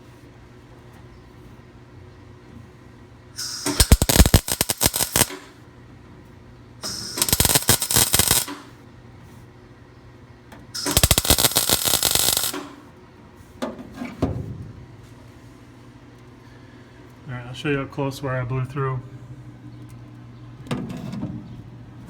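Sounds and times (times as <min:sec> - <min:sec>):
crackling welding arc: 0:03.4 - 0:05.6, 0:06.8 - 0:08.8, 0:10.8 - 0:12.8.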